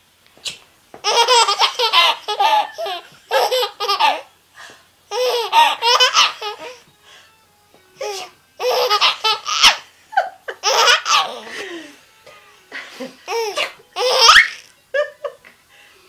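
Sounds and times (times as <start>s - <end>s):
baby laughing: 0.4s - 4.3s, 5.1s - 6.8s, 8.0s - 11.6s, 13.1s - 15.1s.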